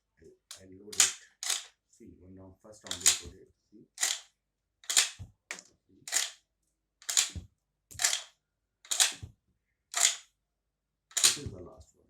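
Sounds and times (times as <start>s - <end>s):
rifle bolt metallic clacks: 0.9s - 1.7s, 2.9s - 3.3s, 4.0s - 6.4s, 7.0s - 7.4s, 8.0s - 8.3s, 8.9s - 9.2s, 9.9s - 10.2s, 11.1s - 11.6s.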